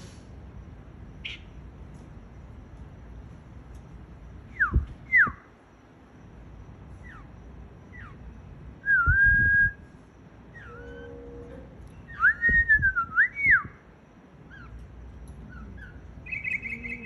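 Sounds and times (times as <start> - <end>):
mockingbird whistling: 7.9 - 9.8, 12.0 - 13.7, 15.5 - 17.0.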